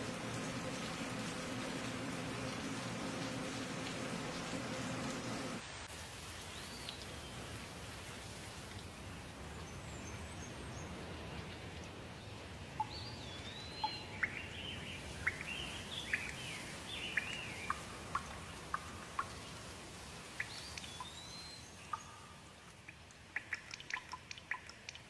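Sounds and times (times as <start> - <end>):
birds chirping: 0.0 - 5.6, 12.8 - 19.6, 20.3 - 25.0
drip-like ticks: 0.0 - 5.6, 8.6 - 9.0, 12.8 - 25.0
steady rain hiss: 0.0 - 25.0.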